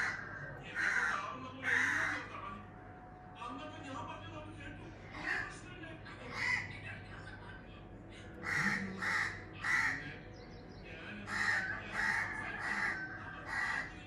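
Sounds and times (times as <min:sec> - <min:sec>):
crows cawing: 0:00.0 - 0:02.6, 0:05.1 - 0:05.6, 0:06.2 - 0:06.9, 0:08.2 - 0:10.5, 0:11.1 - 0:14.0.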